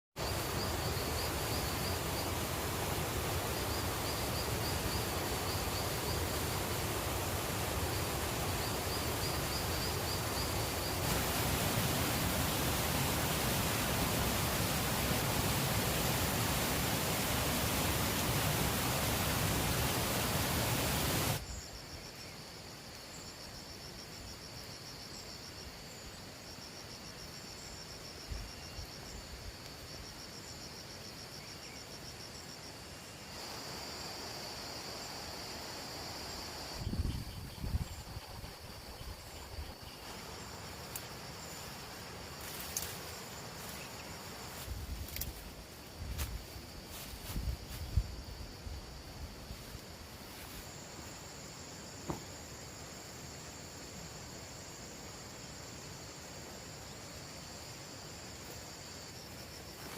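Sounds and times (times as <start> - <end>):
crickets chirping: 0.2 - 59.9
insects trilling: 0.2 - 59.9
heavy rain hissing: 0.3 - 21.4.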